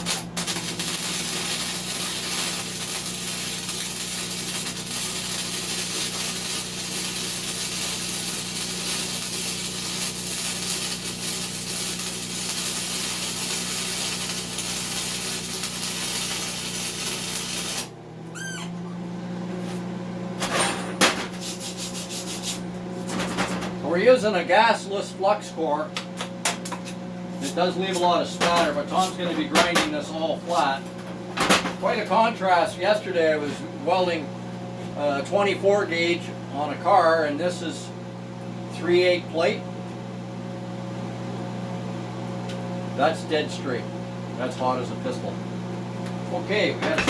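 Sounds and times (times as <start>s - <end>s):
welding arc crackle: 0.0s - 18.0s, 21.3s - 22.7s
welder machine hum: 0.0s - 47.0s.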